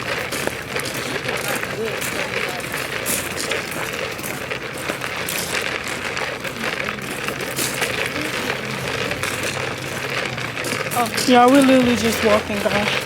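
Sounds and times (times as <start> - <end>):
market bustle with clicks and rattles: 0.0 - 13.0.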